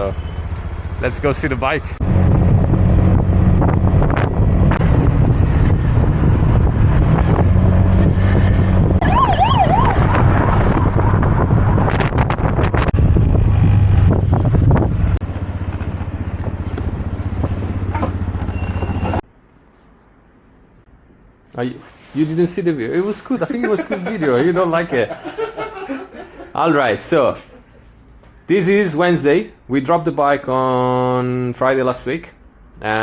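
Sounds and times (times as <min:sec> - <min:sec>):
road noise: 0:00.0 - 0:33.0
wind buffeting microphone: 0:02.0 - 0:18.2
siren warbling: 0:09.0 - 0:11.0
scooter engine: 0:15.0 - 0:19.2.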